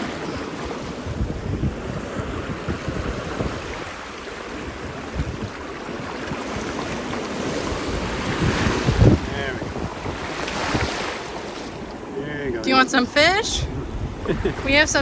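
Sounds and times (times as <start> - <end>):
ocean surf breaking: 0.0 - 15.0
wind buffeting microphone: 0.0 - 15.0.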